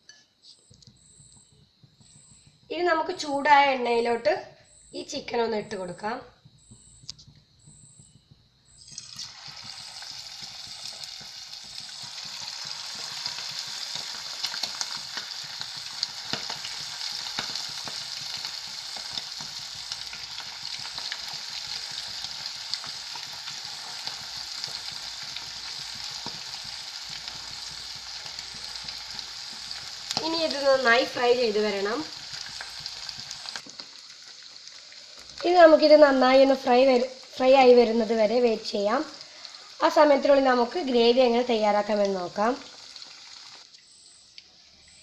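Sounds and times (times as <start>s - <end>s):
oil crackling and popping: 8.9s - 37.4s, 41.9s - 43.8s
chicken sizzling in hot oil: 8.9s - 44.2s.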